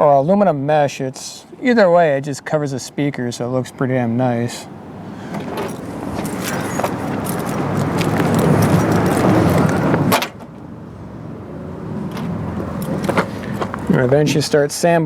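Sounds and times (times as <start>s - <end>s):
rustling handling noise: 5.3s - 10.2s, 12.1s - 14.2s.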